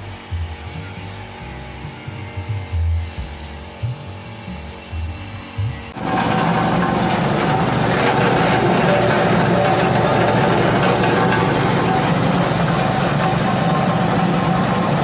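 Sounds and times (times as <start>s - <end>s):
grinding machine running: 5.9s - 15.0s.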